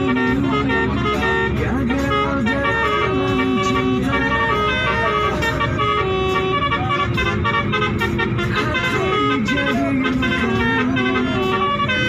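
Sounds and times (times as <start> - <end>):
bus engine rumble: 0.0 - 12.0
multi-tone air horn melody: 0.0 - 12.0.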